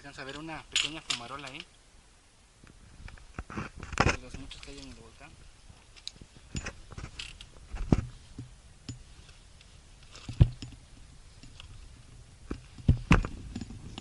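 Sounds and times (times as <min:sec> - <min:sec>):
loud thumps: 0:12.5 - 0:14.0.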